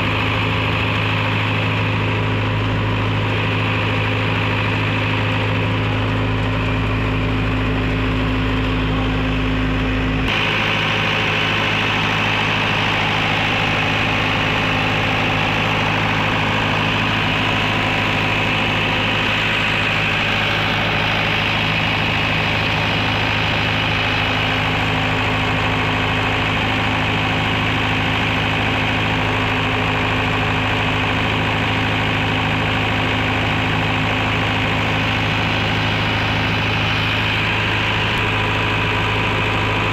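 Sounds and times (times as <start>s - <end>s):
generator engine humming: 0.0s - 39.9s.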